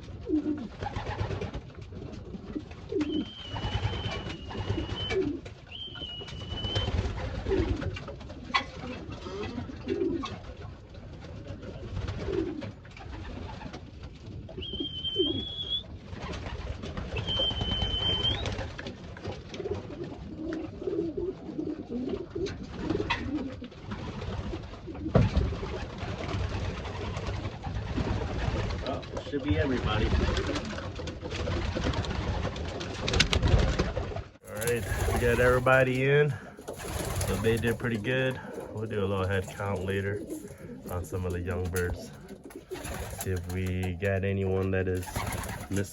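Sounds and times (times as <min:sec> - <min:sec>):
pigeons cooing: 0:00.0 - 0:28.9, 0:29.5 - 0:45.9.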